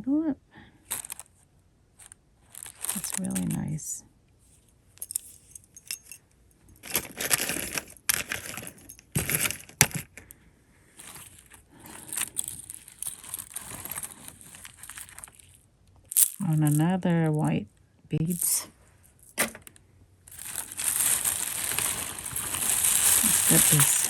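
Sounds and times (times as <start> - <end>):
jewelry clinking and jangling: 0.8 - 1.3, 2.0 - 3.8, 4.9 - 10.3, 11.0 - 17.4, 18.2 - 24.0
rustling bursts: 11.0 - 16.4, 20.3 - 24.0.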